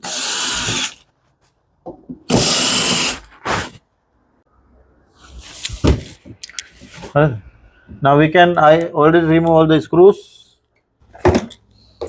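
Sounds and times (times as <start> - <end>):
cordless drill running: 0.0 - 1.0.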